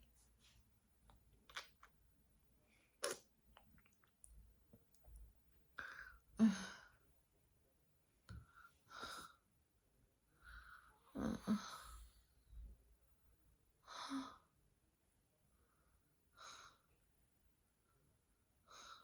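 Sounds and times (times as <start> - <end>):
woman breathing softly: 10.3 - 12.5.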